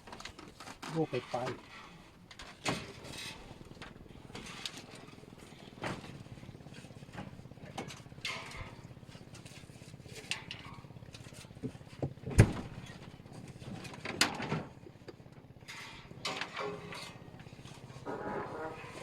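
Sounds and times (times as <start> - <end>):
knocks and clatters: 10.2 - 19.0.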